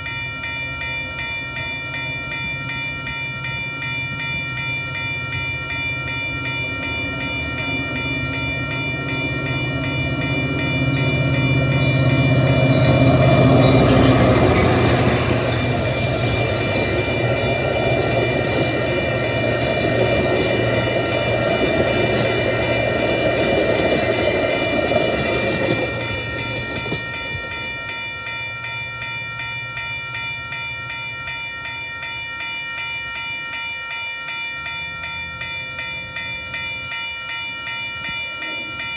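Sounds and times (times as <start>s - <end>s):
ringing high tones: 0.0s - 38.9s
diesel train passing: 1.0s - 32.2s
wheels clicking over rail joints: 10.8s - 27.8s.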